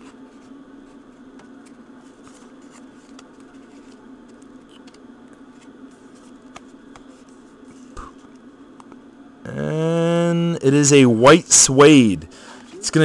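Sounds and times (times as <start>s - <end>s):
low background hum: 0.0s - 13.0s
card packaging clicking and rustling: 1.3s - 7.1s.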